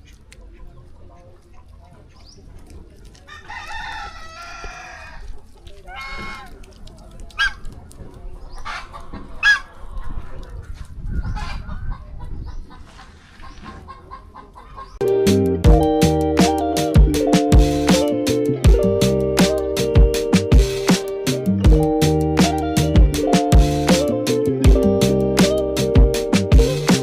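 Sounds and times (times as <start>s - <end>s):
rooster crowing: 3.3s - 5.3s
chickens clucking and squawking: 8.3s - 15.0s.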